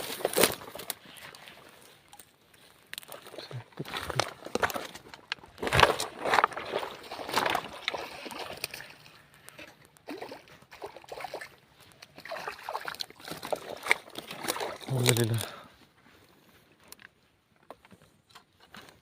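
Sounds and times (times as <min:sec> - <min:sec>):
fish splashing in water: 0:06.6 - 0:15.3.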